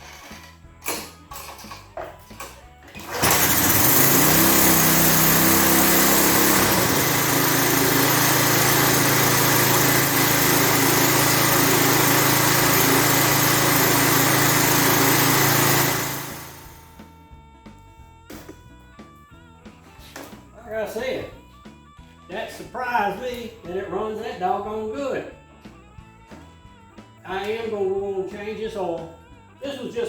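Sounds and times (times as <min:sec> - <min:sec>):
small engine running: 0:02.9 - 0:17.2.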